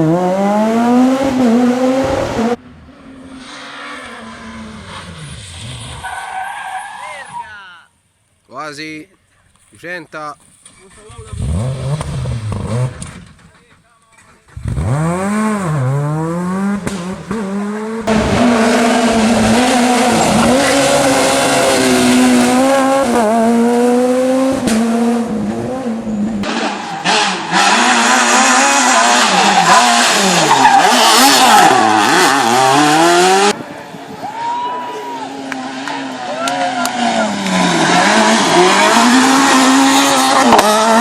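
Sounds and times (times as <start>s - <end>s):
rally car engines revving: 0.0s - 6.2s, 10.9s - 13.6s, 14.2s - 34.1s, 35.2s - 41.0s.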